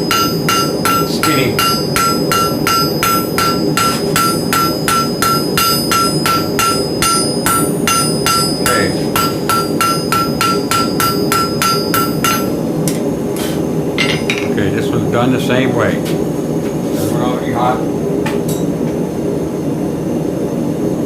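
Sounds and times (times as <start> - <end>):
hammer striking iron on anvil: 0.0 - 13.0, 14.0 - 14.5.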